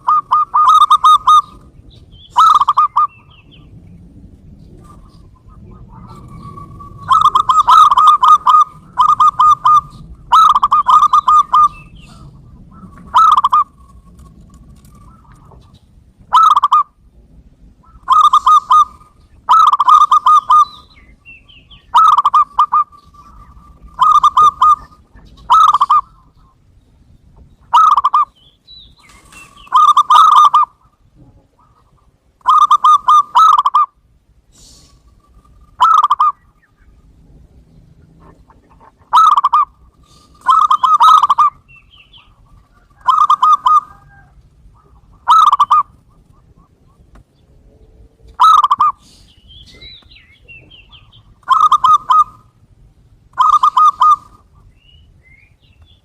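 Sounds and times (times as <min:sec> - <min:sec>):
dove cooing: 0:00.0 - 0:17.0, 0:17.6 - 0:26.7, 0:27.7 - 0:28.4, 0:29.0 - 0:34.0, 0:34.6 - 0:36.6, 0:37.9 - 0:52.6, 0:53.3 - 0:54.7.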